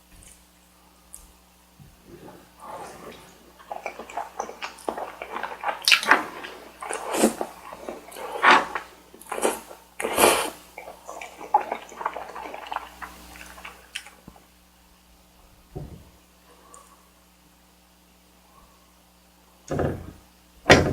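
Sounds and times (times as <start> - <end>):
wet chewing: 2.0 - 14.4
loud wet smacks: 2.6 - 14.2.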